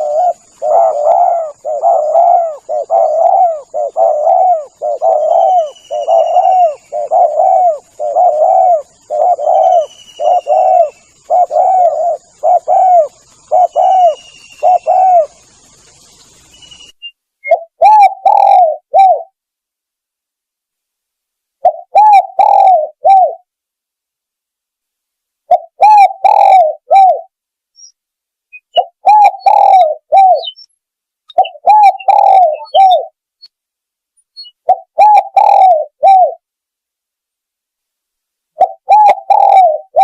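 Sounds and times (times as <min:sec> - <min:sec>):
dove cooing: 0:00.0 - 0:15.5, 0:17.4 - 0:19.4, 0:21.6 - 0:23.5, 0:25.5 - 0:27.3, 0:28.7 - 0:30.6, 0:31.3 - 0:33.2, 0:34.4 - 0:36.4, 0:38.6 - 0:40.0.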